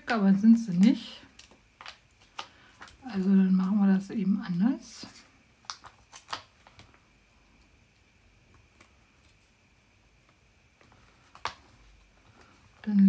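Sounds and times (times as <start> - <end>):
paper pieces clicking and tapping: 0.0 - 3.0.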